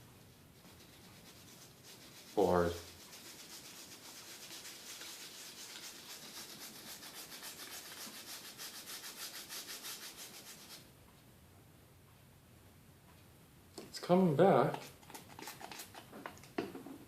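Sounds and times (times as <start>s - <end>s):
small brush scrubbing circuit board: 0.6s - 10.8s, 14.4s - 16.1s.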